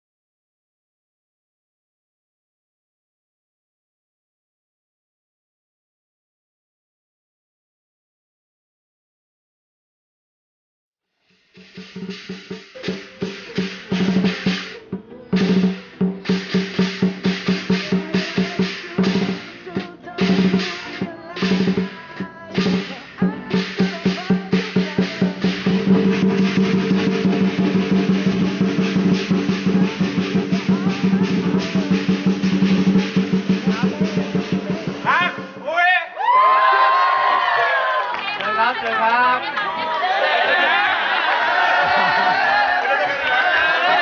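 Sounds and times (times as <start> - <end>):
drum rolls: 11.4 - 37.5.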